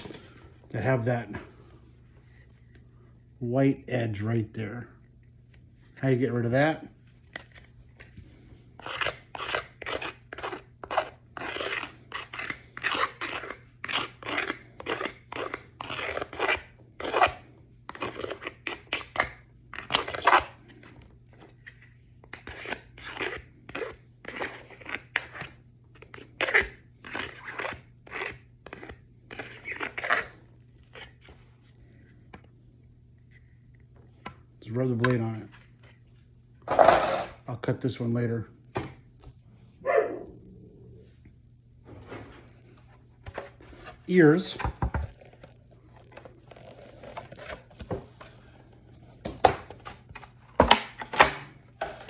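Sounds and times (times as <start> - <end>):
knife blade scraping plastic: 8.8 - 31.4, 46.0 - 48.3.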